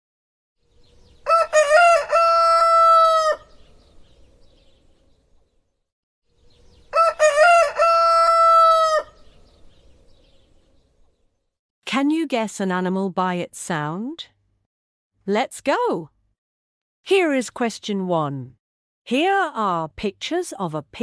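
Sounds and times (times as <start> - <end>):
rooster crowing: 1.2 - 3.6, 6.8 - 9.2.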